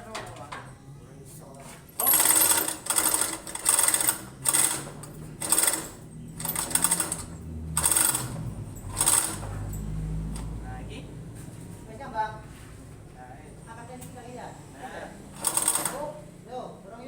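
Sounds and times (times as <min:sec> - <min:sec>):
chain hoist chain rattling: 0:02.0 - 0:10.0, 0:15.4 - 0:16.1.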